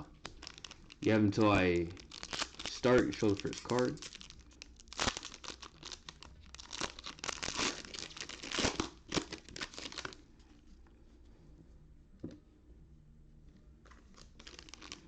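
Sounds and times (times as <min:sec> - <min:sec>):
foil wrappers crinkling and tearing: 0:00.0 - 0:10.2, 0:13.9 - 0:15.0.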